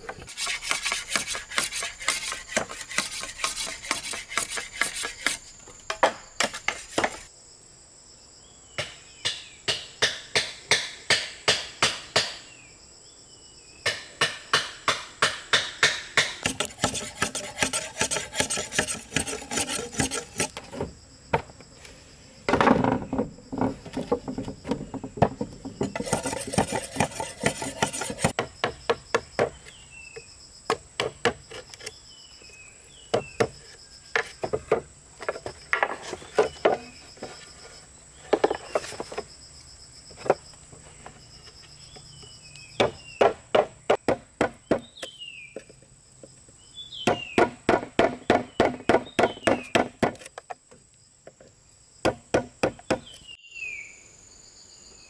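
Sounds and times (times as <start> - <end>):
tool strikes on bamboo: 8.8 - 12.4, 13.8 - 21.5, 42.8 - 45.2, 47.0 - 50.5, 52.0 - 53.3
loud rasping noise: 16.4 - 20.6, 25.9 - 28.3.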